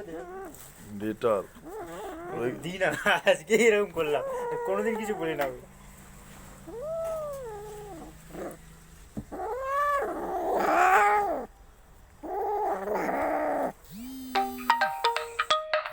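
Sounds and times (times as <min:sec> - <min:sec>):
angry cat yowling and growling: 0:00.0 - 0:00.6, 0:01.6 - 0:02.8, 0:04.0 - 0:05.6, 0:06.6 - 0:08.7, 0:09.3 - 0:11.5, 0:12.2 - 0:14.0.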